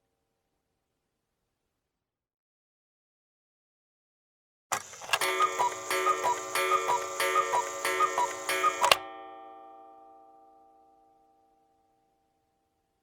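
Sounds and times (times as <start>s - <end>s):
clock mechanism click: 4.7s - 9.1s
cuckoo clock calls: 4.8s - 9.1s
ringing chord: 5.2s - 12.0s.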